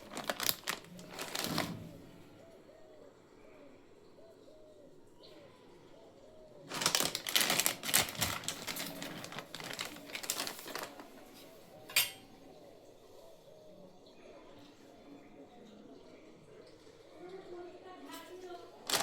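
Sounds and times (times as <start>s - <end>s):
utensils clattering against dishes: 0.0s - 1.8s, 6.7s - 12.4s.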